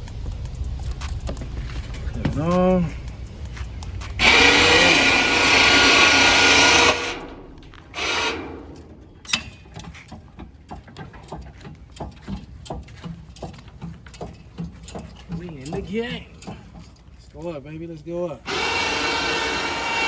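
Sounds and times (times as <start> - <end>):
electric winch motor running: 4.1 - 12.3, 18.4 - 20.0
clicks and knocks: 5.4 - 17.1.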